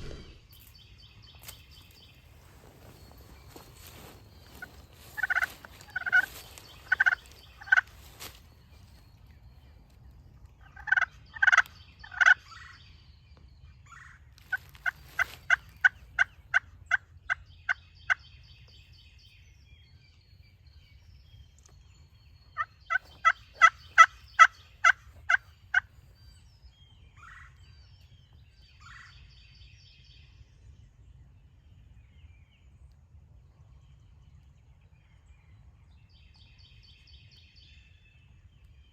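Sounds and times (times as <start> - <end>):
turkey yelps: 4.5 - 7.8, 22.6 - 25.8.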